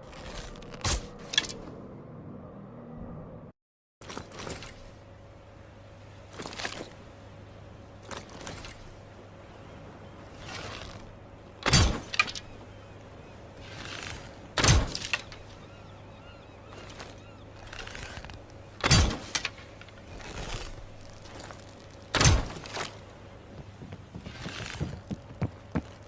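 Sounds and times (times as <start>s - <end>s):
bow rustle: 8.0s - 12.7s, 13.4s - 15.7s, 16.7s - 25.2s.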